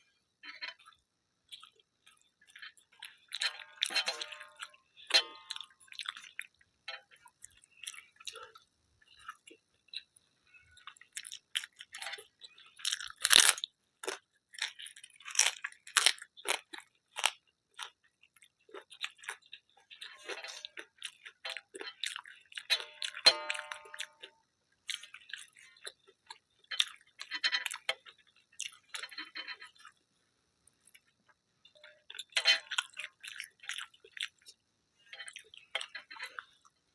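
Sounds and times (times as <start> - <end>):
chewing: 0.4 - 36.8
crunching crisp papad: 12.8 - 17.4.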